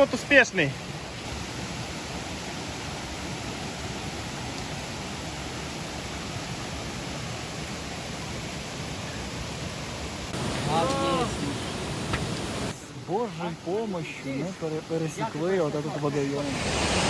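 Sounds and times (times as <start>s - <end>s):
river rushing: 0.0s - 17.0s.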